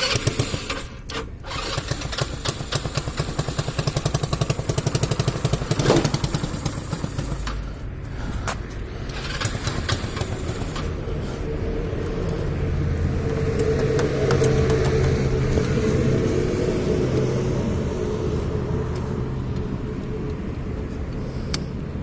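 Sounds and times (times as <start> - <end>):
motorcycle engine running: 0.0 - 7.8, 9.0 - 12.5.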